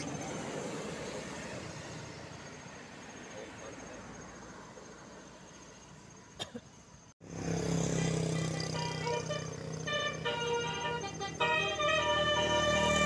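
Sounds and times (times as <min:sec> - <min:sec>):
bus horn playing a melody: 0:08.0 - 0:13.0.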